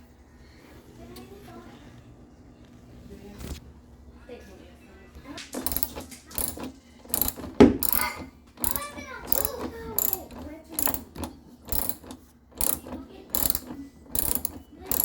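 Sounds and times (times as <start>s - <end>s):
washing machine knocking: 5.6s - 15.0s
squeaky creaks: 7.2s - 12.0s.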